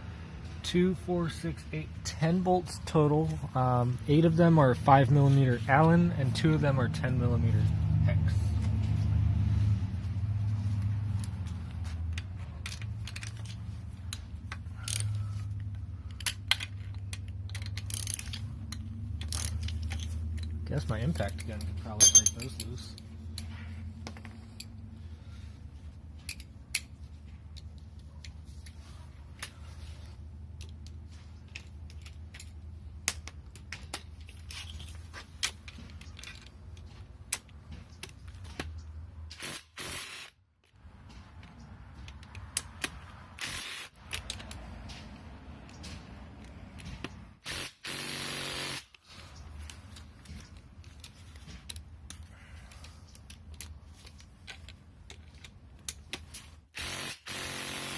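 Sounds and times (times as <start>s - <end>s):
metal tools clinking: 21.4s - 22.9s
cordless impact gun: 39.3s - 40.4s, 43.4s - 44.0s, 47.4s - 49.0s, 56.7s - 57.9s.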